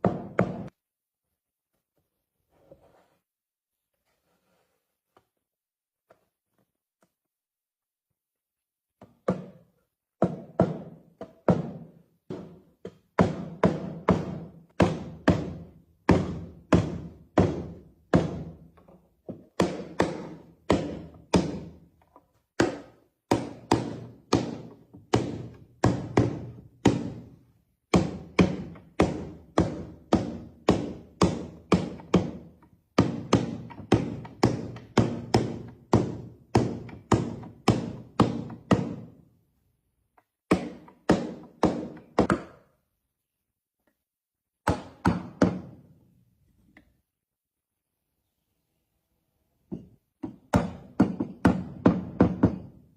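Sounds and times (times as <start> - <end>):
hard knocks on wood: 49.7 - 52.7.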